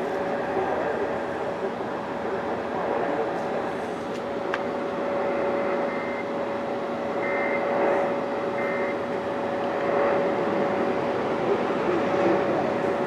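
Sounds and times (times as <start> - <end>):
short high-pitched beeps: 5.8 - 6.3
radio static hiss: 7.1 - 10.8.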